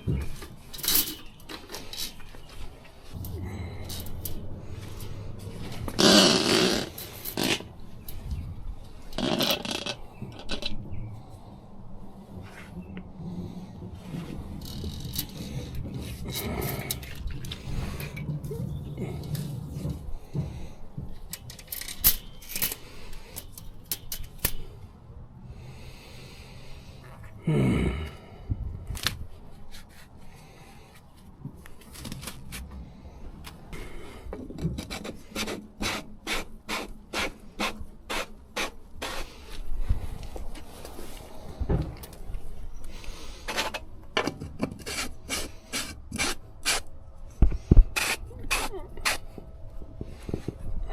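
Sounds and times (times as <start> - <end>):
rough scraping: 3.0 - 10.8, 34.6 - 41.7, 42.9 - 46.9.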